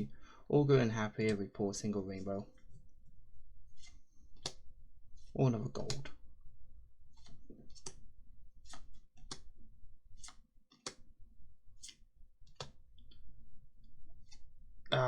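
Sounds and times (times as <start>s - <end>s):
cards flicked clicking: 3.8s - 4.6s, 7.2s - 8.0s, 8.6s - 9.6s, 10.2s - 11.1s, 11.8s - 13.2s.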